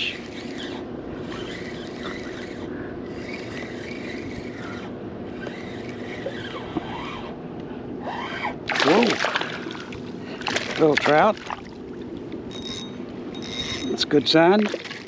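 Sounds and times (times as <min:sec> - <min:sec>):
faint squeaks and scrapes: 0:00.0 - 0:07.4, 0:08.0 - 0:08.6
mechanical hum: 0:00.0 - 0:15.0.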